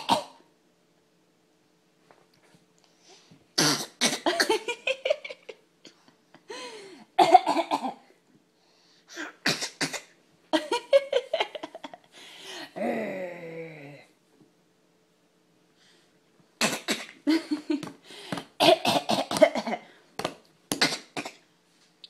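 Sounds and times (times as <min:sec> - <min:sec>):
coughing and throaty growling: 0:00.0 - 0:00.4, 0:03.6 - 0:04.8, 0:07.2 - 0:08.0, 0:16.6 - 0:17.3, 0:18.6 - 0:19.9.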